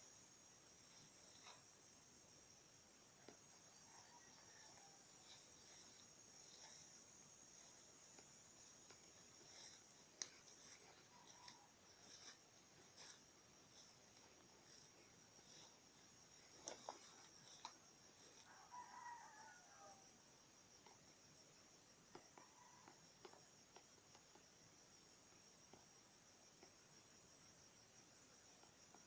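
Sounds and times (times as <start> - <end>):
crickets chirring: 0.0 - 29.0
distant rooster crowing: 3.5 - 6.8, 18.2 - 20.1.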